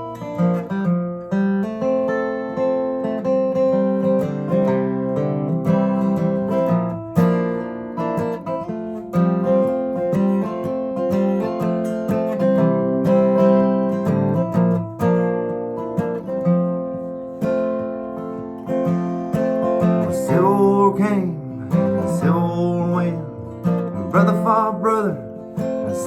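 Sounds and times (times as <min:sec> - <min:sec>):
acoustic guitar strummed and picked: 0:00.0 - 0:26.0.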